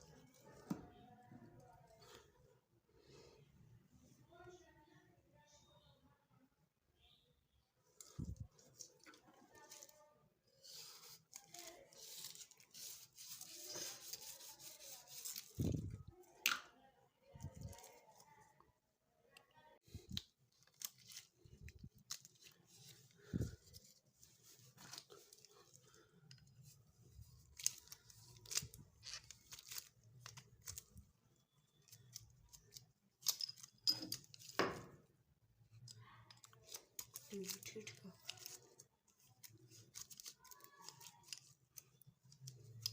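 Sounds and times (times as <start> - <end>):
rubbing and scraping on pistol: 10.5 - 15.8
pistol parts clicking and scraping: 31.9 - 34.7.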